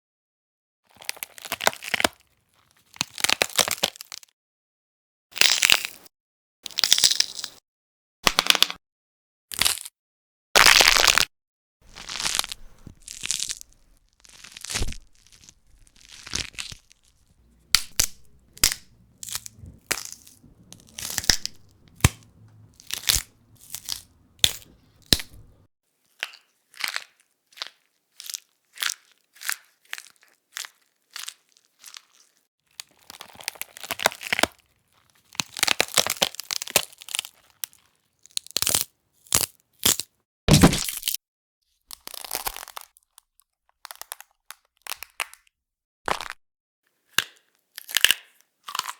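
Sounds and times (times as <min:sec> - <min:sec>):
dense crunching and crackling: 0:11.8 - 0:25.7, 0:40.5 - 0:41.1
bones cracking and snapping: 0:11.9 - 0:25.7, 0:39.4 - 0:41.2.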